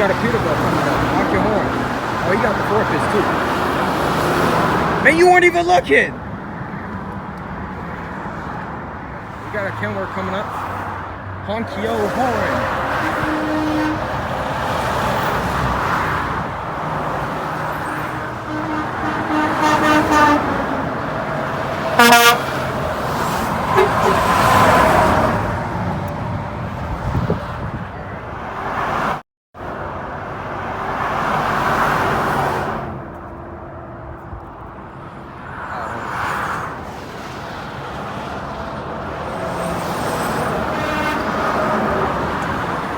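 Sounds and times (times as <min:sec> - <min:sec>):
highway road and traffic noise: 0:00.0 - 0:42.9
truck air horn: 0:12.5 - 0:14.4, 0:17.6 - 0:22.8, 0:23.4 - 0:24.9, 0:39.4 - 0:42.3.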